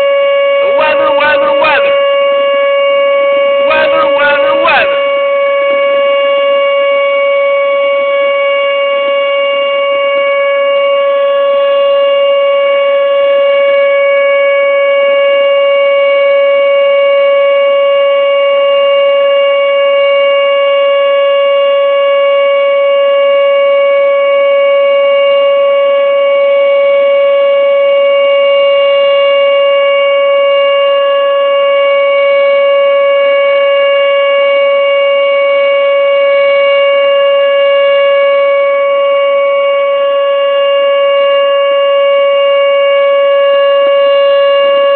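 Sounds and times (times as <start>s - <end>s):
tornado warning siren steady tone: 0.0s - 44.9s.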